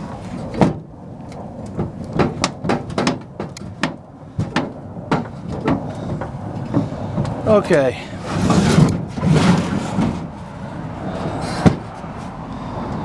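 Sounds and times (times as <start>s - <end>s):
sharp metal knocks: 1.7s - 7.5s.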